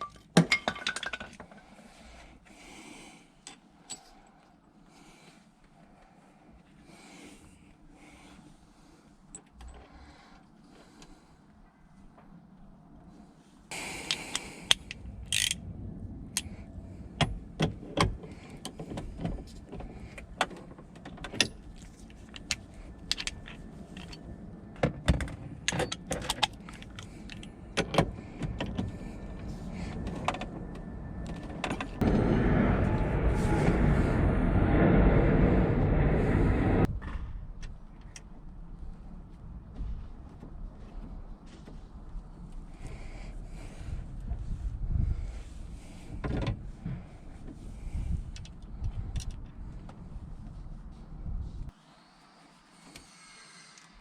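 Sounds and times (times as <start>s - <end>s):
hand tools clicking and rattling: 14.0s - 15.6s
steady loud noise: 32.0s - 37.0s.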